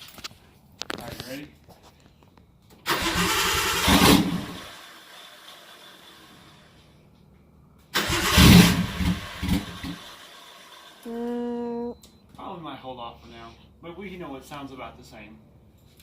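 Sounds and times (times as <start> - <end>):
car engine exhaust bursts: 2.9 - 7.0, 7.9 - 11.0.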